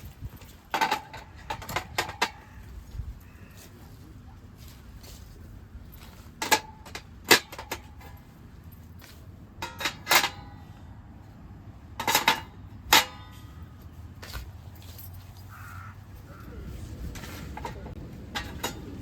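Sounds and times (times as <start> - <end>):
metal knocks and clinks: 0.0 - 3.4, 5.8 - 10.9, 11.9 - 15.6, 17.1 - 19.0.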